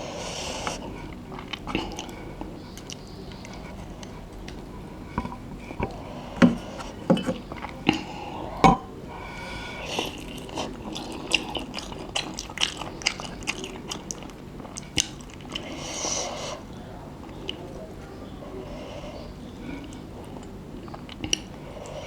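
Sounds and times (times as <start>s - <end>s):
chewing and biting noodles: 9.8s - 16.0s.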